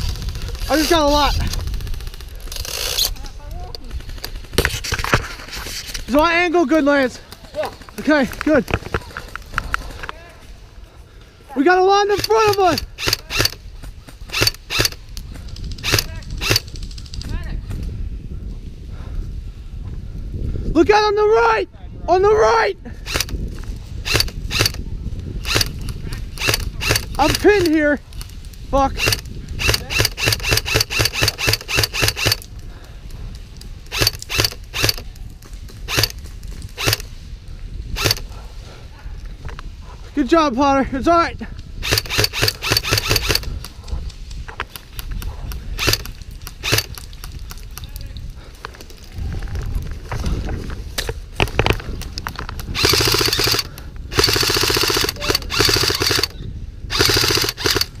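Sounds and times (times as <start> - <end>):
airsoft gun firing bursts: 12.1 - 15.0, 24.1 - 24.7, 25.4 - 27.7, 29.0 - 32.4, 33.9 - 35.0, 41.8 - 43.5, 45.7 - 47.6, 52.7 - 58.0.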